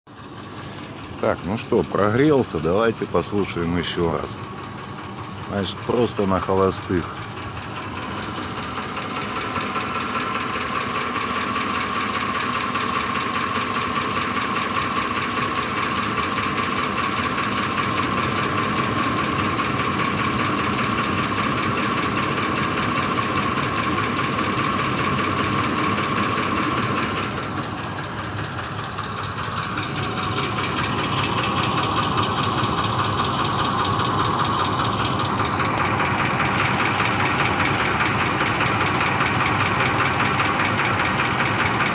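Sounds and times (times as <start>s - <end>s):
car engine idling: 0.1s - 41.9s
engine knock: 0.1s - 41.9s.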